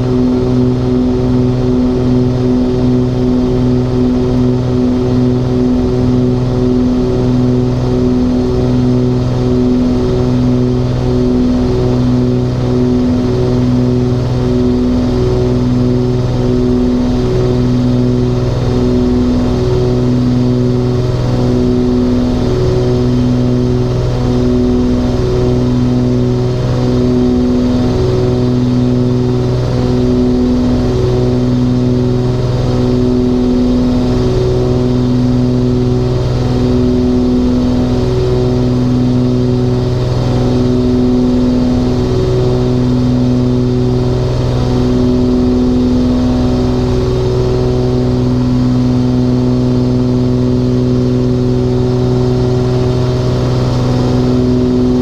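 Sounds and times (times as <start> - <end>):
twin piston aircraft engines droning: 0.0 - 55.0.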